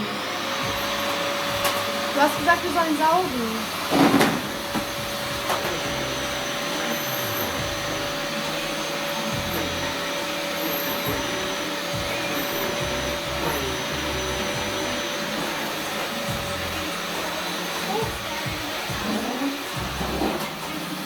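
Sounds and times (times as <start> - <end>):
vacuum cleaner running: 0.0 - 21.0
vacuum nozzle bumps: 0.7 - 6.7.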